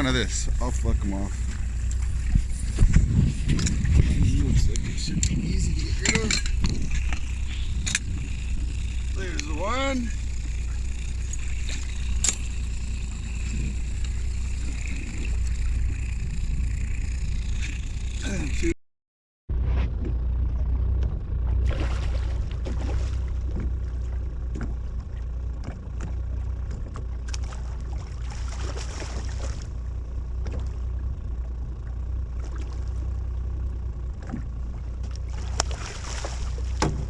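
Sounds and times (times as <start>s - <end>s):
wind and water rumble: 0.0s - 18.8s, 19.5s - 37.0s
light knocks on boat: 23.4s - 23.8s, 36.7s - 37.0s.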